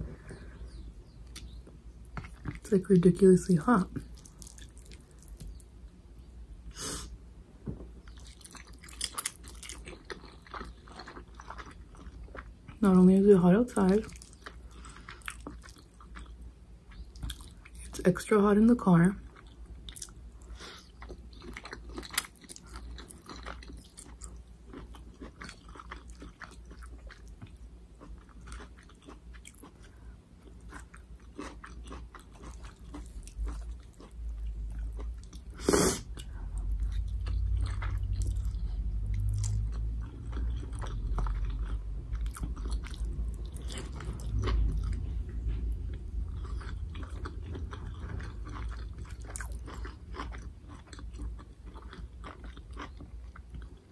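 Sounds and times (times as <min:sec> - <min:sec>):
low steady rumble: 0:00.0 - 0:53.9
person chewing noodles: 0:01.2 - 0:02.6, 0:04.0 - 0:05.8, 0:08.0 - 0:12.8, 0:13.8 - 0:18.0, 0:19.2 - 0:53.9.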